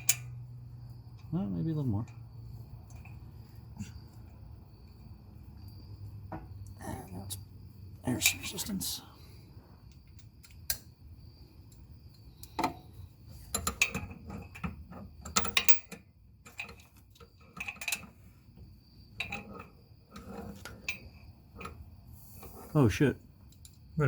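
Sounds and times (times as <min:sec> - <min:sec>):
small metallic clinks: 0:00.0 - 0:07.2, 0:08.0 - 0:08.8, 0:09.8 - 0:11.0, 0:11.6 - 0:22.5, 0:23.4 - 0:24.0.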